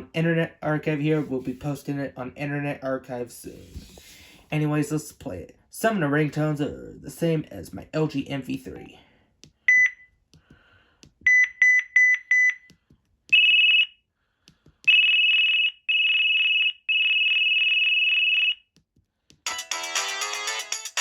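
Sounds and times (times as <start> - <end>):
phone beeping: 9.7 - 10.1, 11.3 - 12.7
musical ringtone: 19.5 - 21.0.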